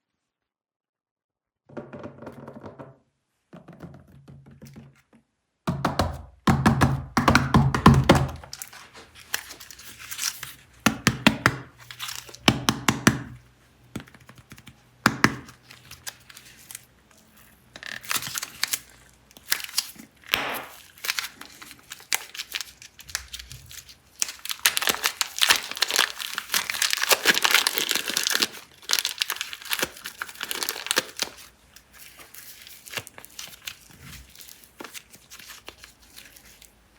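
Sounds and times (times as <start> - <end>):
plastic packaging crinkling: 8.0 - 10.8, 11.7 - 12.5, 15.4 - 36.9.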